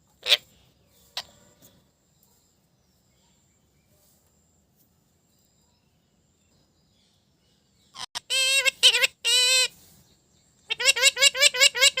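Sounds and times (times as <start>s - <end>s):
parrot wavering calls: 8.0s - 9.7s, 10.7s - 12.0s.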